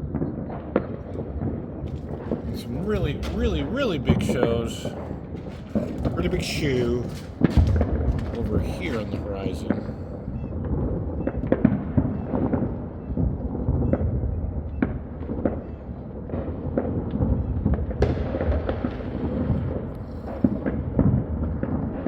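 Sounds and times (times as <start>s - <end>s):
distant fireworks booms: 0.0s - 22.0s
fireworks bangs and crackles: 0.0s - 22.0s.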